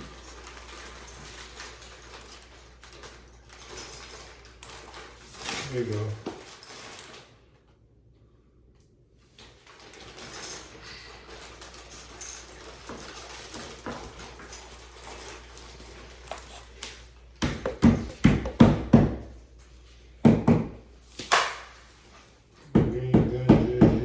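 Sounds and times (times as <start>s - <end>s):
furniture parts being handled: 9.4s - 24.0s
sharp knocks: 17.4s - 19.3s, 20.2s - 20.8s.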